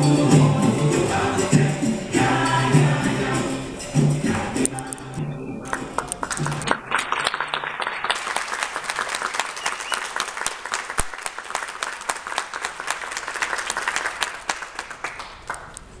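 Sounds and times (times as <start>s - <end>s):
audience applauding: 5.7s - 15.8s.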